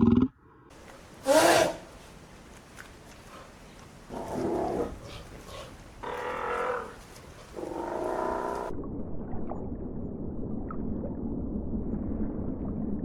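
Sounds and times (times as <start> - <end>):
animal calling: 0.8 - 8.7.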